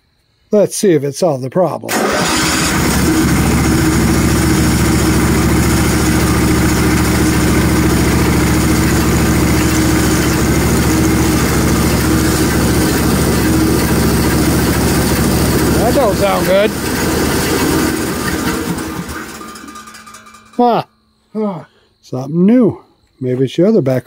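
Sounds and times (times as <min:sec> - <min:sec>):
sawmill engine running: 0:01.9 - 0:20.8.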